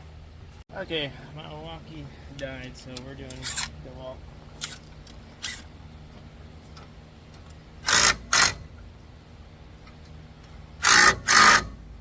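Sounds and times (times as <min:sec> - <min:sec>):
impact wrench bursts: 0:04.6 - 0:05.7, 0:07.8 - 0:08.7, 0:10.8 - 0:11.8.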